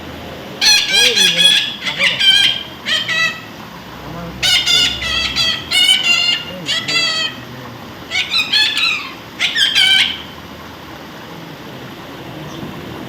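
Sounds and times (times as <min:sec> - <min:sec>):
parrot calling harshly: 0:00.6 - 0:03.6, 0:04.3 - 0:10.5.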